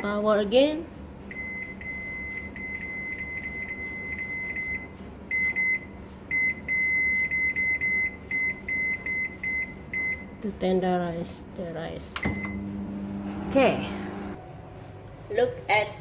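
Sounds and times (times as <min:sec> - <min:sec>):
microwave oven beeping: 0:01.3 - 0:10.4, 0:12.2 - 0:14.9.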